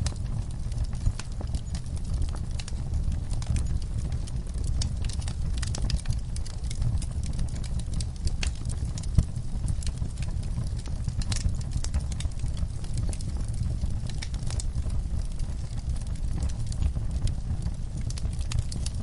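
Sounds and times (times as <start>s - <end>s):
fire crackling and popping: 0.0s - 19.0s
low rumble of flame: 0.0s - 19.0s.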